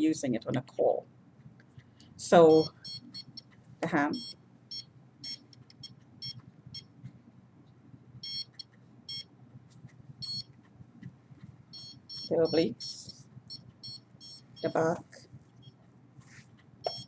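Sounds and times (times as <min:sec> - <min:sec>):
faint low hum: 0:00.0 - 0:17.0
high-pitched detector chirps: 0:02.4 - 0:03.5, 0:04.1 - 0:06.9, 0:08.2 - 0:09.3, 0:10.2 - 0:10.5, 0:11.7 - 0:14.9.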